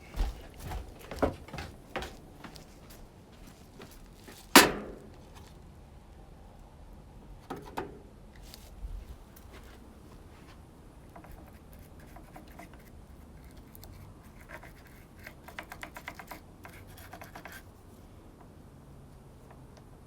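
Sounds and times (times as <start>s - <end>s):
scratching on metal parts: 11.1s - 17.8s.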